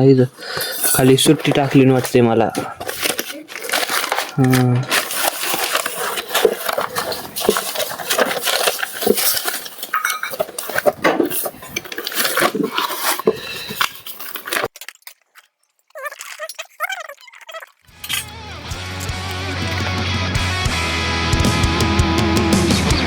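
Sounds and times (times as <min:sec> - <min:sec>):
objects rummaged clinking and rustling: 0:00.2 - 0:16.9.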